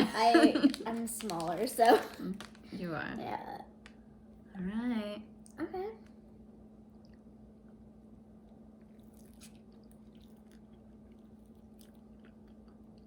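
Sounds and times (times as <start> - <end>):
steady low hum: 0.0 - 13.0
chewing ice cream sandwich: 6.9 - 13.0.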